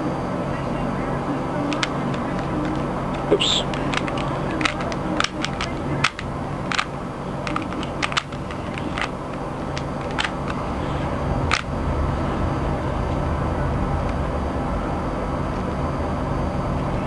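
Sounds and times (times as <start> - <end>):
low background hum: 0.0 - 17.0
plastic cube clicks and snaps: 3.7 - 9.1.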